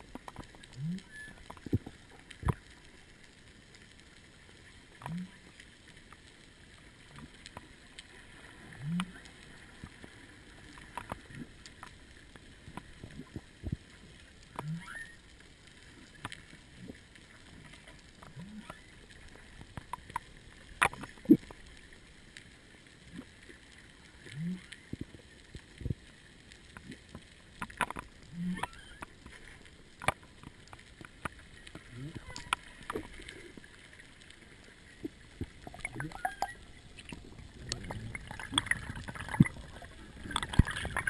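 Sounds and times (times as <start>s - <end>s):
whale song moans underwater: 0.6s - 1.9s, 14.5s - 15.3s, 18.3s - 19.0s, 24.2s - 25.1s, 28.3s - 29.2s, 31.8s - 33.5s, 35.6s - 36.8s.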